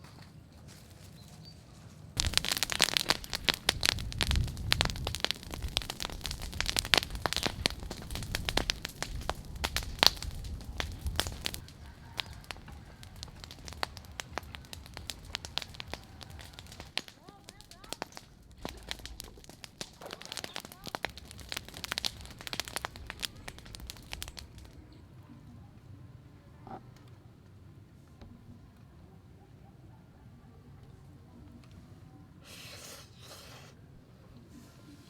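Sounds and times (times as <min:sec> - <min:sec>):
dense crackling and snapping: 0:02.2 - 0:25.0.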